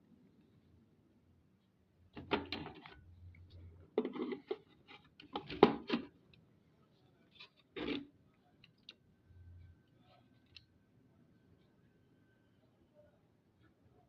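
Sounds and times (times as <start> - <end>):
plastic housing clicks and knocks: 2.2 - 3.0.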